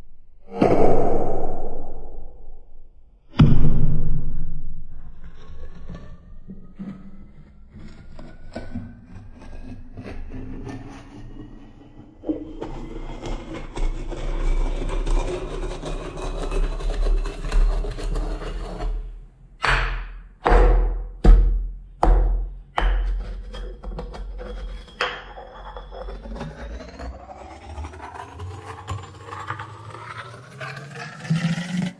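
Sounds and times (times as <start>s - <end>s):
heavy pounding strokes: 0.4s - 2.8s
faint rising tone: 0.4s - 2.9s
pestle grinding in a mortar: 14.1s - 25.8s.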